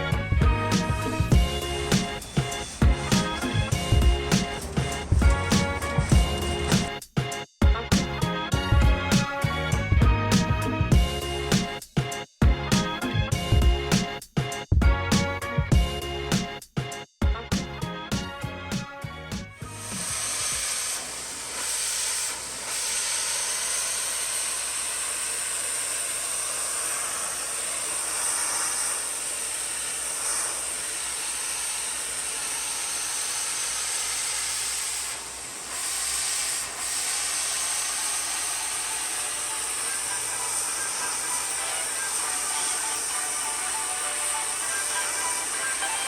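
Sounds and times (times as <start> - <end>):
steam cleaner hissing: 0.0 - 7.1, 19.6 - 46.0
music: 0.0 - 20.8, 38.3 - 46.0.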